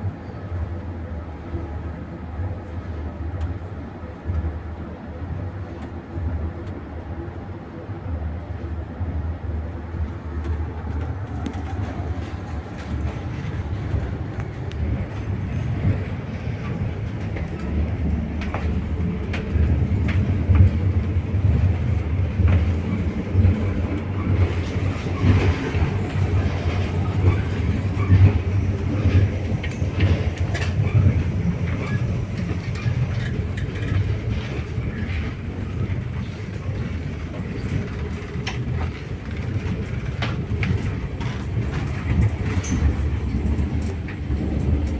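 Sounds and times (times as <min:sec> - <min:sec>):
train wheels rumbling: 0:09.0 - 0:44.9.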